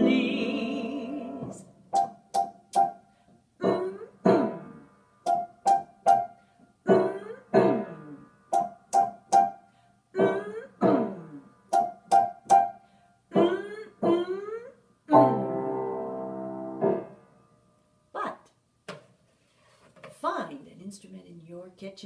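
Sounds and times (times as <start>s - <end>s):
person singing: 0.0s - 1.6s
piano music: 0.0s - 3.0s, 3.6s - 9.6s, 10.2s - 14.4s, 15.1s - 17.4s.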